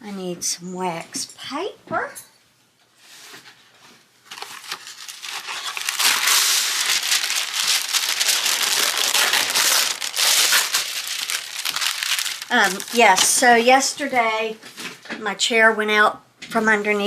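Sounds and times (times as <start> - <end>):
wax paper crinkling: 3.2 - 14.9.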